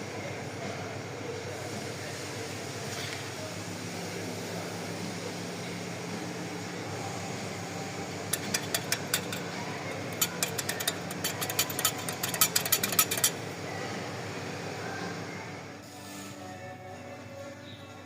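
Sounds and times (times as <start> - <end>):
steady hum: 5.9 - 15.8.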